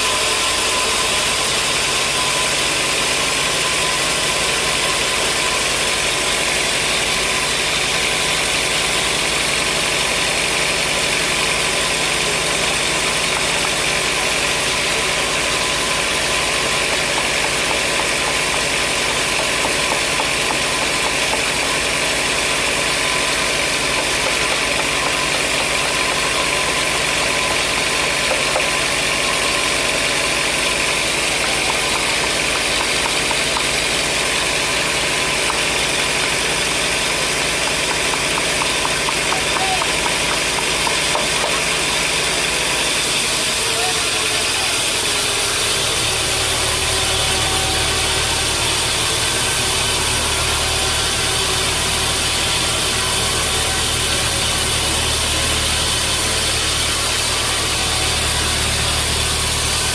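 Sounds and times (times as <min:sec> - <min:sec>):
sawmill machinery drone: 0:00.0 - 0:59.9.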